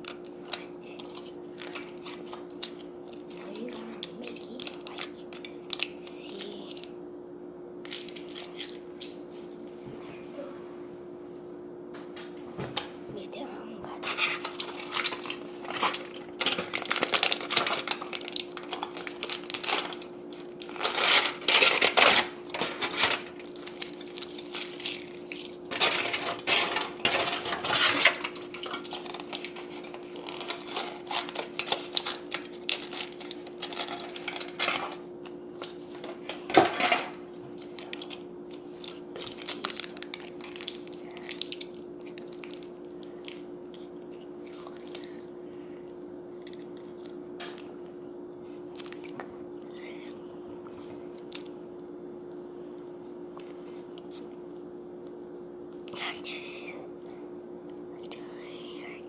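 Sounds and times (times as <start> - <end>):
steady hum: 0.0 - 59.0
hands rustling small materials: 14.0 - 36.9.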